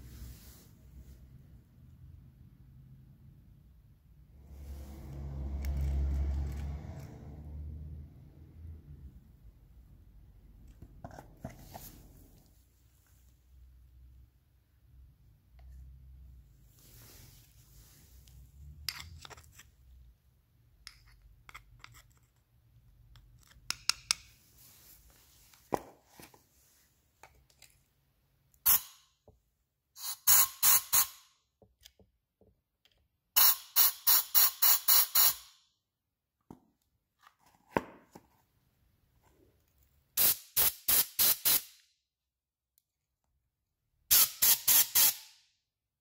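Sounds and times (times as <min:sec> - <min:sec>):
hissing spray bursts: 0:40.2 - 0:41.7, 0:44.1 - 0:45.3.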